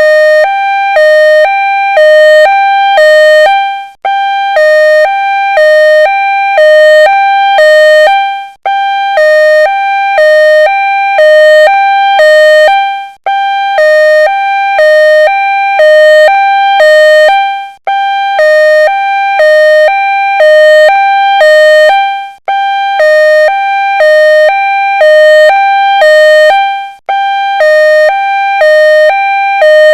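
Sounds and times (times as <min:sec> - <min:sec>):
two-tone ambulance siren: 0:00.0 - 0:29.9.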